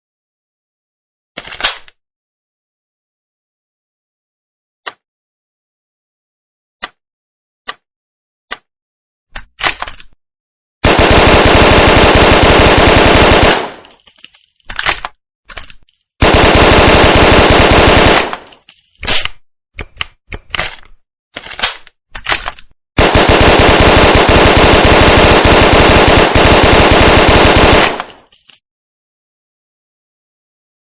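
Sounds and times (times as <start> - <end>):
gun reloading clicks: 9.4 - 10.2, 14.6 - 15.9, 18.0 - 22.7, 27.8 - 28.2
submachine gun automatic fire: 10.8 - 13.9, 16.2 - 18.5, 23.0 - 28.2.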